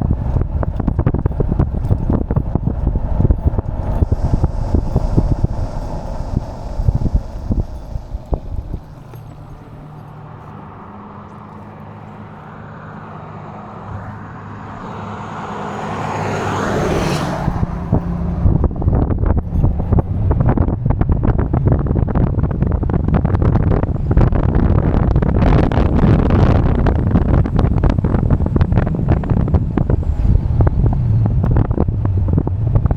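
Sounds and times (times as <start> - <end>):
vehicle passing by whoosh: 0.0 - 11.2, 12.4 - 19.4
wind buffeting microphone: 0.0 - 32.9.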